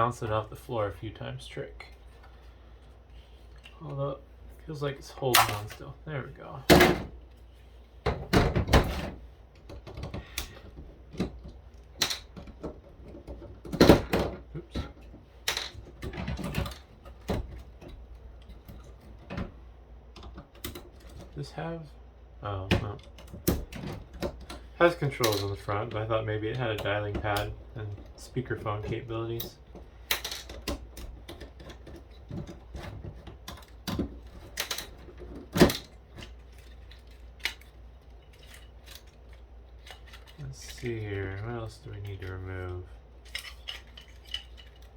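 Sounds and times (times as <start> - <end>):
plastic parts clicking and knocking: 8.0 - 21.4, 22.6 - 44.9.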